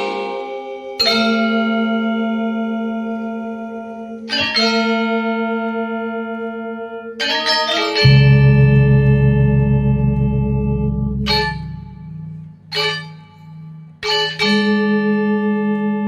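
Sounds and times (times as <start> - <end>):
bell-like struck chords: 8.0 - 14.9.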